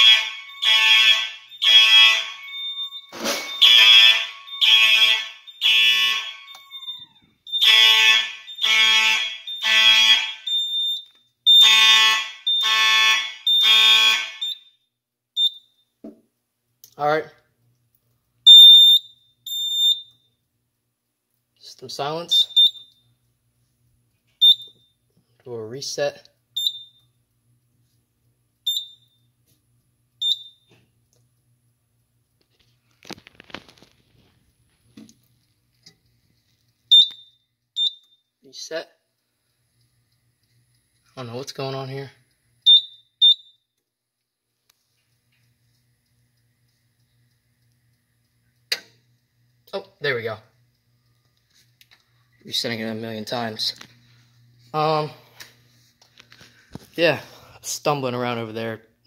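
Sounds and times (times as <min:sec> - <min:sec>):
fire alarm horn blasts: 0:00.0 - 0:15.9, 0:18.5 - 0:20.4, 0:22.2 - 0:23.0, 0:24.4 - 0:25.0, 0:26.6 - 0:27.1, 0:28.7 - 0:29.3, 0:30.2 - 0:30.7, 0:36.9 - 0:38.7, 0:41.2 - 0:43.7
short high beep: 0:02.4 - 0:04.7.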